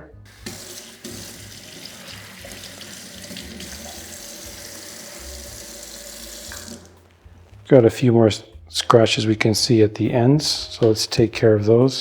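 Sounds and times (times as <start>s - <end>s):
water running from a tap: 0.3s - 7.1s.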